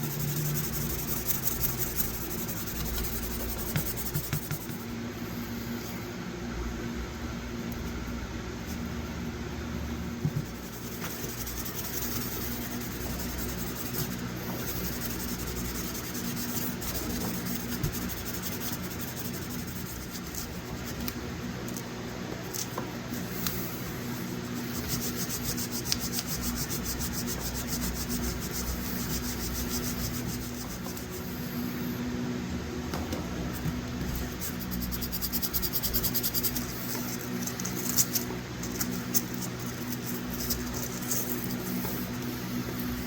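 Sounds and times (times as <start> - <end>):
sandpaper rubbing on blade: 0.0 - 4.8, 10.4 - 21.8, 23.2 - 31.4, 34.0 - 43.0
steady low hum: 0.0 - 43.0.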